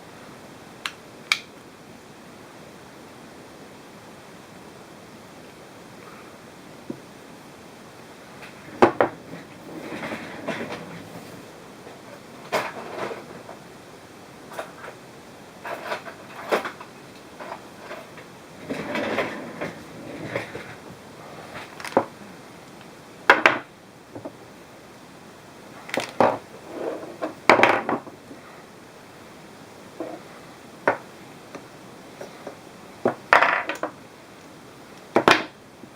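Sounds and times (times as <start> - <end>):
hard mount parts clattering: 8.4 - 13.6, 25.8 - 28.1, 30.0 - 34.0.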